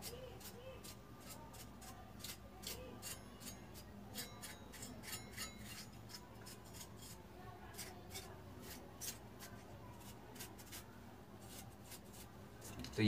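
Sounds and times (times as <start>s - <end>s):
brush scrubbing circuit board: 4.2s - 13.0s.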